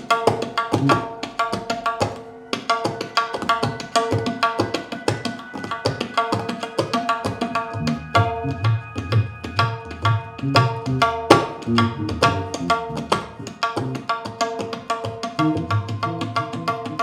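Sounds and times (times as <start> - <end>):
live band playing: 7.7 - 14.0, 15.4 - 17.0.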